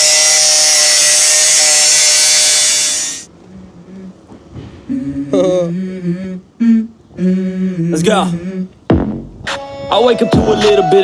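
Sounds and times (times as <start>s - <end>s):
power saw running: 0.0s - 3.3s
music: 8.9s - 11.0s.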